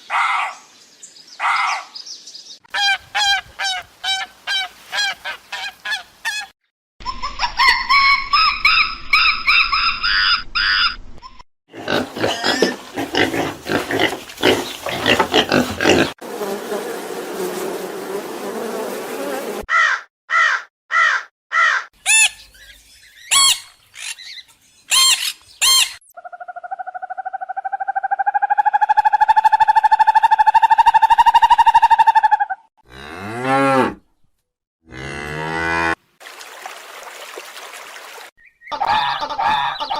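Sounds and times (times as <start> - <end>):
animal and bird calls: 0.0 - 6.5, 7.1 - 16.2, 19.7 - 32.7, 38.4 - 39.9.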